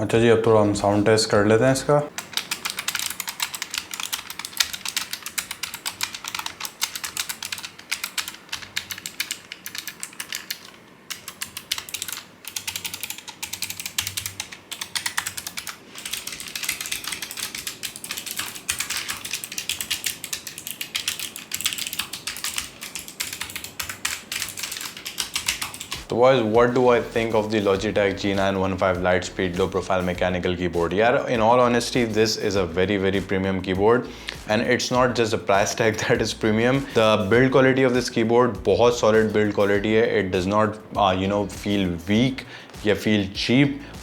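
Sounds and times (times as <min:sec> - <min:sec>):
clicky mechanical keyboard typing: 0:02.2 - 0:26.1.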